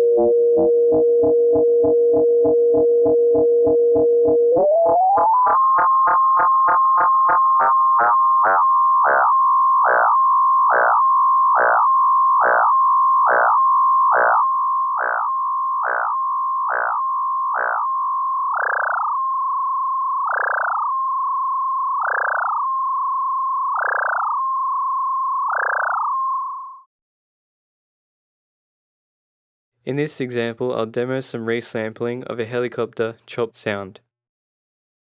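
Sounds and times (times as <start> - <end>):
synthesizer tone with chirping swoops: 4.4 - 19.4, 20.2 - 21.1, 21.9 - 22.8, 23.6 - 24.7, 25.3 - 26.8.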